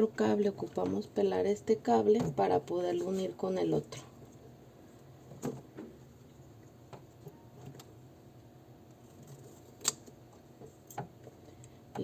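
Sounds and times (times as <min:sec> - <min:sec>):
faint steady hum: 0:00.0 - 0:12.0
clicks and taps handling wire: 0:08.8 - 0:12.0.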